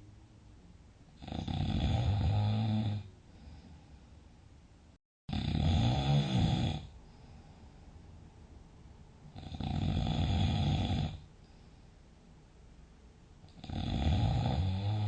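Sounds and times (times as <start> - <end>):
person snoring loudly: 1.2 - 3.1, 5.3 - 7.0, 9.4 - 11.2, 13.5 - 15.0
quiet breathing: 2.3 - 4.7, 6.1 - 8.6, 9.2 - 12.6.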